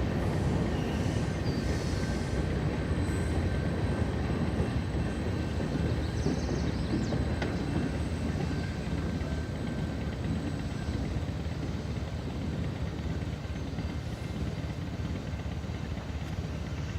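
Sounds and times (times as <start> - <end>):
freight train rumbling past: 0.0 - 16.9.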